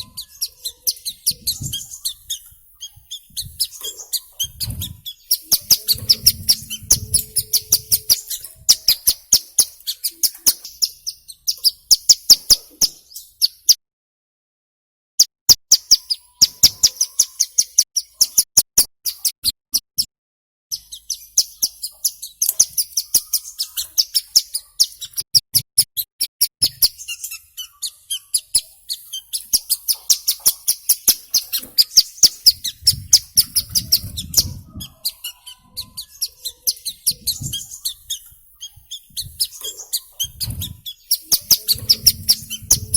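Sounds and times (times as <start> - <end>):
bird calling high sharp notes: 0.0 - 10.9, 34.9 - 42.9.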